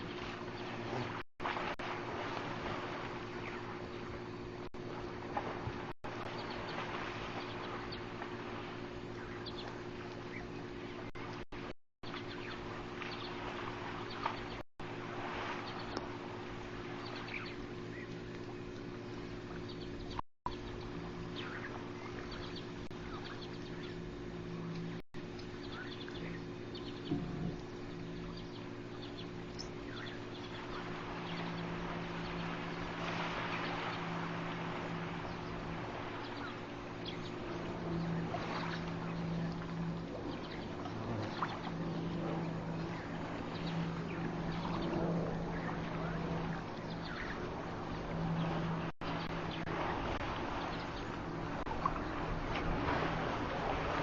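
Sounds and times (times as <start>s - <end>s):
steady low hum: 0.0s - 54.0s
faint bird calls: 16.9s - 51.2s
rushing water: 30.3s - 44.3s.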